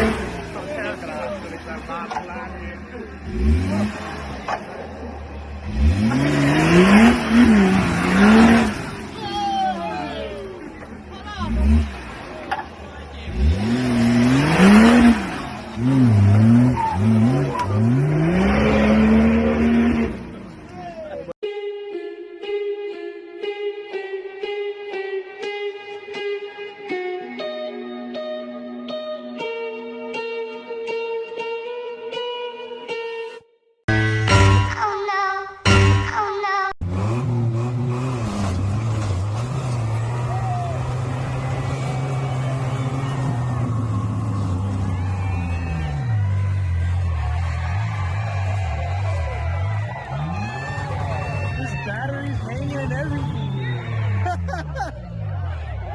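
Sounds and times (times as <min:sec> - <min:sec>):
vehicle engine revving: 0:00.0 - 0:21.4, 0:36.8 - 0:55.9
musical jingle: 0:33.9 - 0:34.9.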